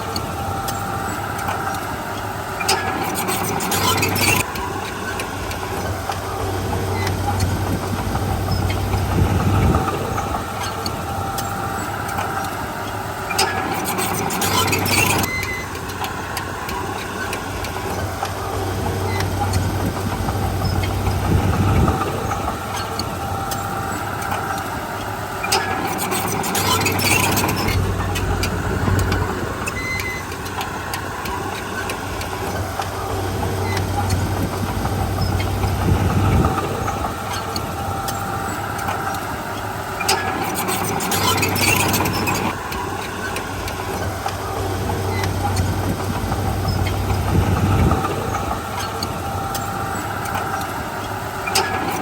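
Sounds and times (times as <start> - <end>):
bulldozer diesel engine running: 0.0 - 52.0
metallic clatter: 13.3 - 15.4, 25.4 - 30.8, 40.0 - 43.4.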